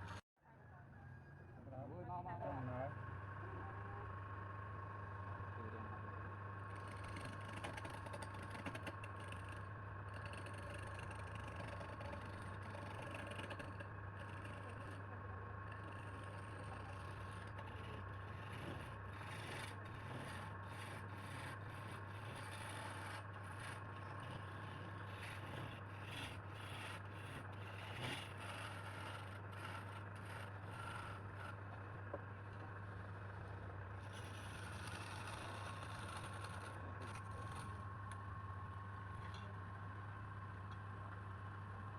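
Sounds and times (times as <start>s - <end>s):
wood lathe motor humming: 4.1s - 38.2s
tool scraping spinning wood: 6.6s - 38.2s.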